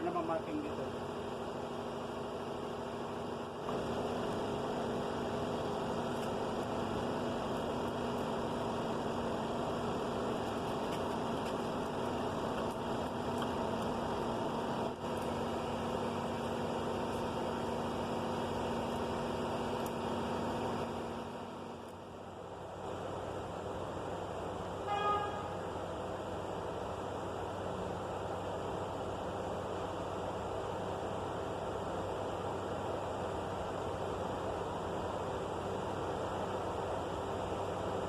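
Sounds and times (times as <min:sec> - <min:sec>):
mechanical hum with hiss: 0:00.0 - 0:38.0.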